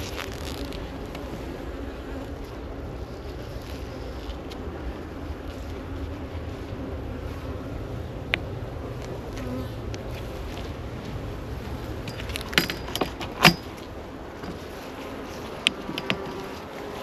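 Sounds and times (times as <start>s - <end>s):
bees buzzing: 0.0s - 17.0s
sharp clicks and knocks: 12.0s - 14.7s, 15.6s - 16.7s.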